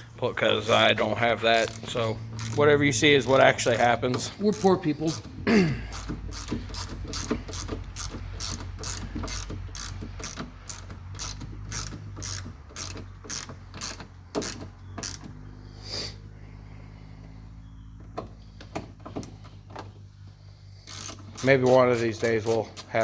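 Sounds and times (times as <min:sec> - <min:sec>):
hand ratchet clicking: 0:00.6 - 0:15.4, 0:20.8 - 0:23.0.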